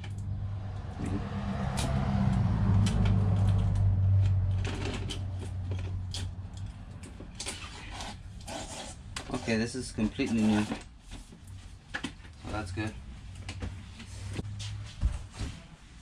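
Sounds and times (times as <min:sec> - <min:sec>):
low engine-like hum: 0:00.0 - 0:08.2.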